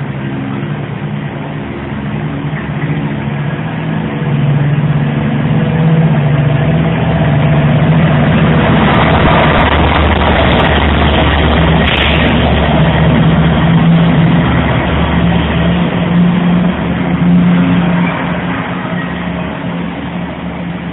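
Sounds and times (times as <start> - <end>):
diesel locomotive engine humming: 0.0 - 20.9
rising rumble and hiss: 0.0 - 20.9.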